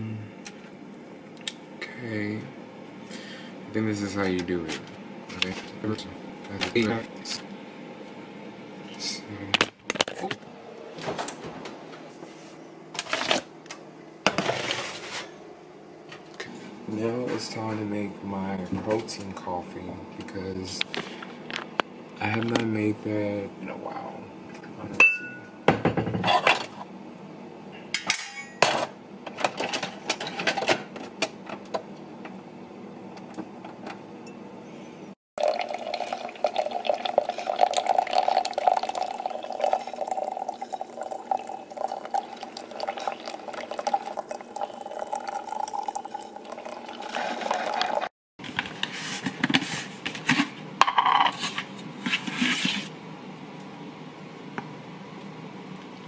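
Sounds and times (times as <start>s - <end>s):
liquid pouring: 35.4s - 48.1s.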